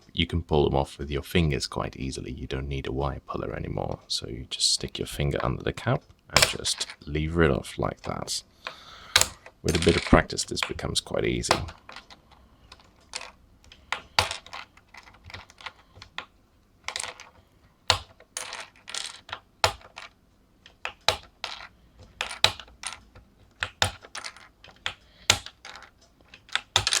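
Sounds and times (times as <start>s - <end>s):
keycaps clicking off keyboard: 8.0s - 16.3s, 16.9s - 20.1s, 20.7s - 27.0s.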